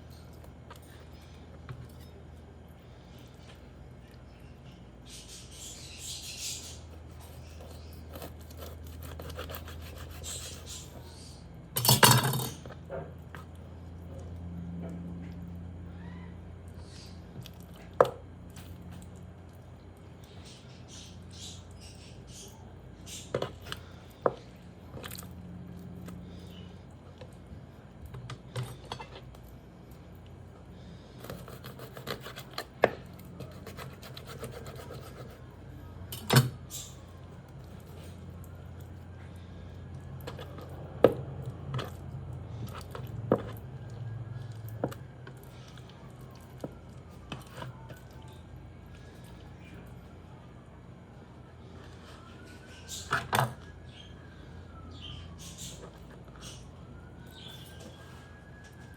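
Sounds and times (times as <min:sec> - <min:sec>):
soft squishing and scraping: 0:00.0 - 0:11.8, 0:12.4 - 0:58.9
faint low hum: 0:00.0 - 0:58.9
wet squishing of raw chicken: 0:36.9 - 0:50.0.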